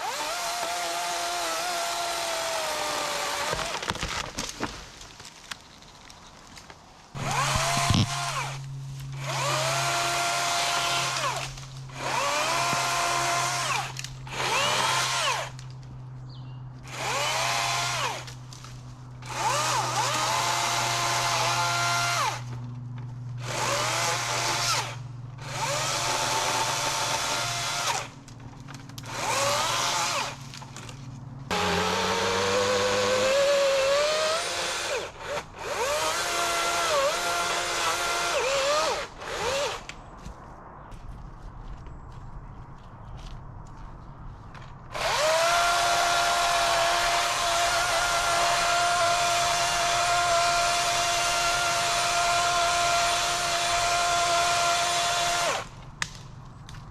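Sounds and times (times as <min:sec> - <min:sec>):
chainsaw revving: 0:00.0 - 0:03.7, 0:07.2 - 0:08.6, 0:09.2 - 0:15.5, 0:16.9 - 0:18.3, 0:19.2 - 0:22.5, 0:23.4 - 0:28.1, 0:29.1 - 0:30.4, 0:31.5 - 0:39.8, 0:45.0 - 0:55.7.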